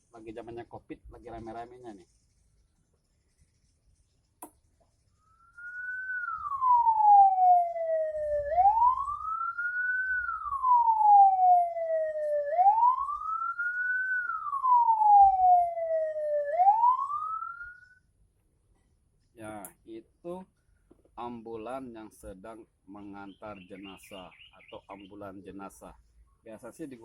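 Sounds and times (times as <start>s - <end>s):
ambulance siren rising and falling: 5.2s - 18.0s.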